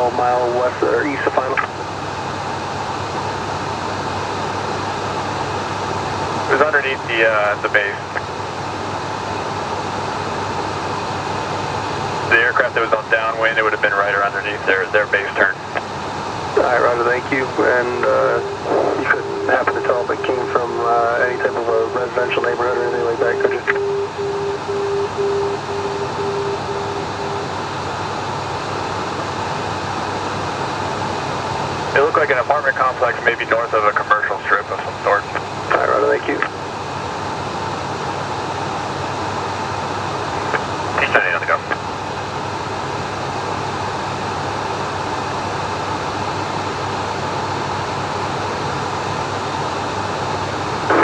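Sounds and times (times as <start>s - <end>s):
jet cockpit noise: 0.0s - 51.0s
low keyed beacon tone: 17.8s - 22.1s, 22.7s - 27.6s.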